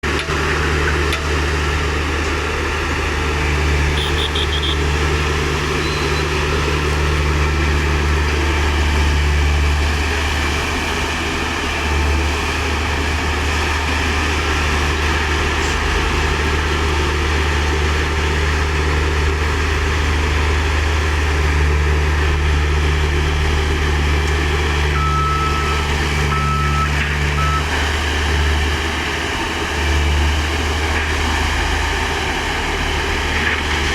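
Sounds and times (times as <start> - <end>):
heavy diesel engines running: 0.0 - 33.9
reversing alarm beeps: 5.8 - 6.3, 24.9 - 27.7.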